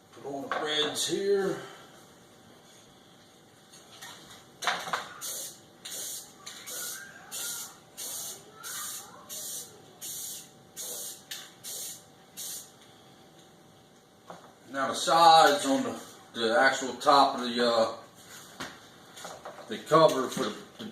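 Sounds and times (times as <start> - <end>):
spray paint can bursts: 5.2 - 12.7.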